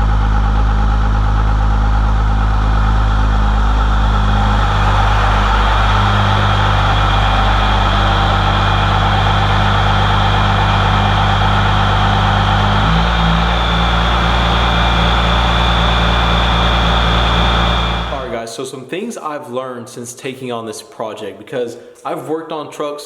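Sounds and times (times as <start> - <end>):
diesel engine running: 0.0 - 18.3
high turbo whistle: 0.0 - 18.4.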